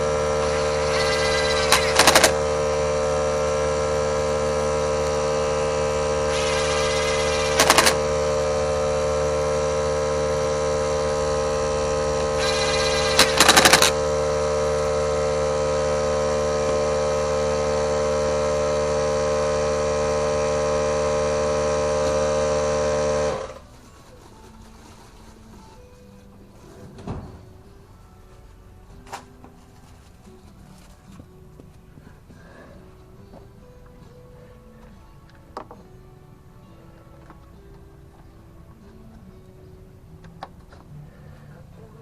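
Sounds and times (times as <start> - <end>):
lawn mower engine running: 0.0 - 23.6.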